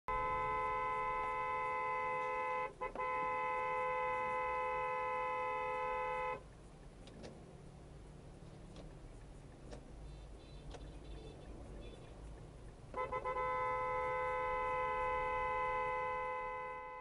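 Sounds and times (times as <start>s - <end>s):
car horn blast: 0.1s - 6.4s, 13.0s - 17.0s.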